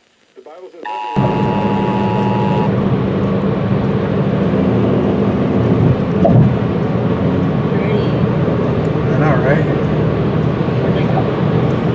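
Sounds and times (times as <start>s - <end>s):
two-tone alert beep: 0.8s - 2.7s
loud steady noise with hum: 1.2s - 11.9s.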